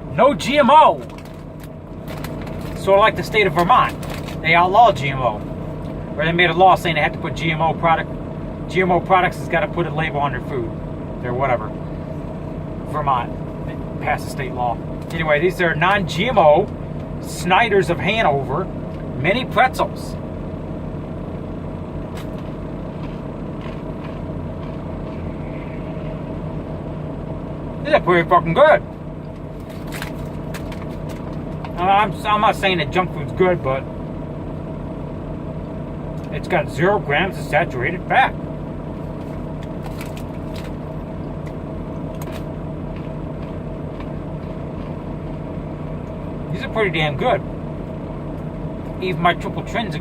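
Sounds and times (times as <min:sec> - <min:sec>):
vehicle engine idling: 0:00.0 - 0:50.0
crisp crunches: 0:01.0 - 0:02.8, 0:03.6 - 0:04.5, 0:22.1 - 0:25.2
pretzels crunching: 0:01.0 - 0:04.7, 0:22.2 - 0:25.2, 0:29.5 - 0:31.8, 0:39.1 - 0:45.1.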